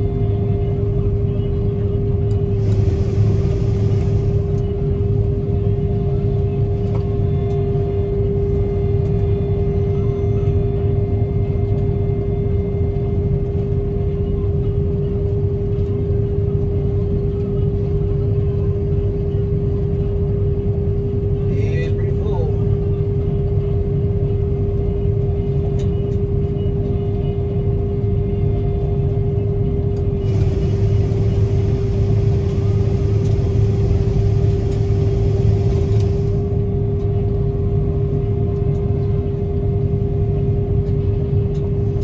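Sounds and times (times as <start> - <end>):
combine harvester running: 0.0 - 42.0.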